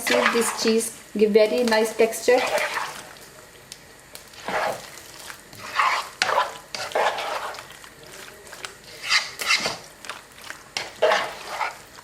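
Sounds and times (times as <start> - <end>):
spoon stirring thick sauce: 2.4 - 3.2, 4.2 - 12.0.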